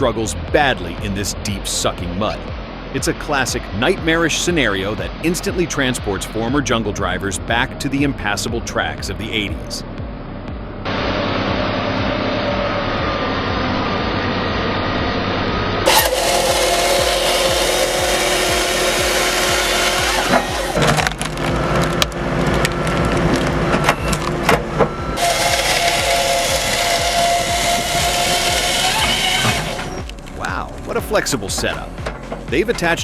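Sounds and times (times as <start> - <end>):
engine running: 0.0 - 33.0
saw running: 15.8 - 21.6, 22.8 - 30.3
wood cracking and splintering: 15.9 - 32.5.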